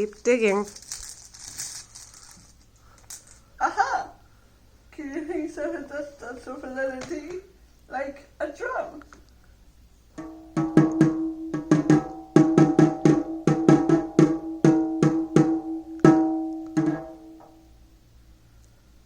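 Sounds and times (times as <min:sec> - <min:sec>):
drum beaten ringing: 0:10.2 - 0:17.6.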